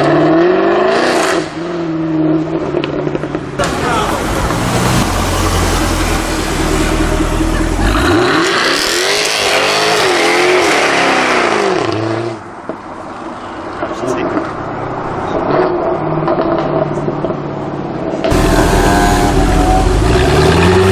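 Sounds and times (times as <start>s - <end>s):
car engine revving: 0.0s - 12.4s, 18.1s - 20.9s.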